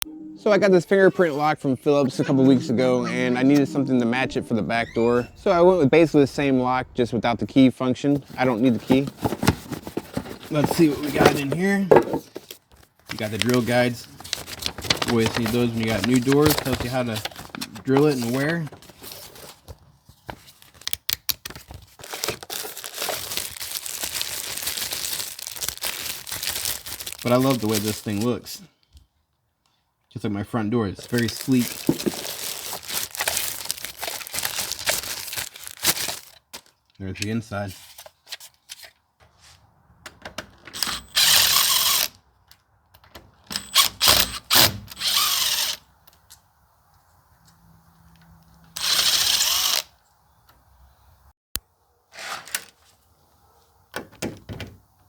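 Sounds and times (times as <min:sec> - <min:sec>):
wrapping crinkling: 0:08.3 - 0:11.6, 0:12.4 - 0:28.4, 0:31.0 - 0:36.8
packaging knocks and clicks: 0:08.7 - 0:13.6, 0:31.2 - 0:36.7
power drill running: 0:48.8 - 0:49.8.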